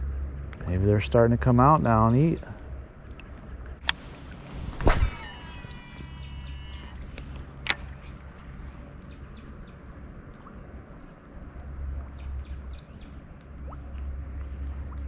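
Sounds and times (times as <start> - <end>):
low uneven rumble: 0.0 - 15.0
faint bird chirps: 5.1 - 7.0.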